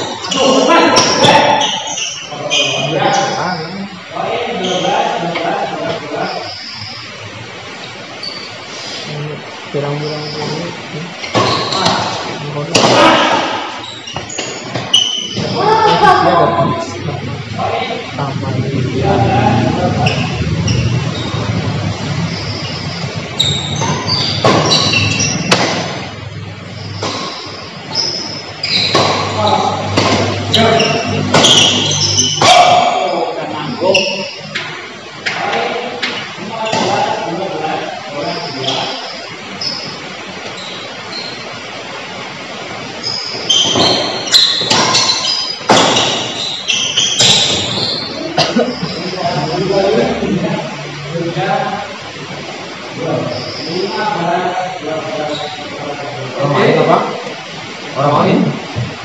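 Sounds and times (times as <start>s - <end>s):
shoes squeaking on court floor: 0.0s - 3.4s, 4.6s - 5.2s, 5.9s - 7.1s, 8.0s - 8.7s, 10.1s - 15.7s, 20.0s - 21.6s, 22.2s - 33.0s, 33.7s - 37.3s, 38.4s - 49.6s, 53.3s - 53.7s, 55.2s - 55.7s
racket hitting shuttlecock: 12.7s - 13.6s, 23.8s - 26.0s, 28.8s - 32.9s, 43.7s - 46.4s, 47.1s - 47.9s
racket striking shuttlecock: 23.8s - 26.0s, 43.7s - 46.4s.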